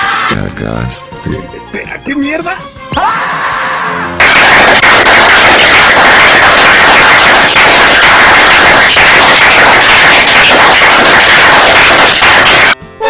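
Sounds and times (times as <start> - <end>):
distorted machine-gun fire: 4.2 - 12.8.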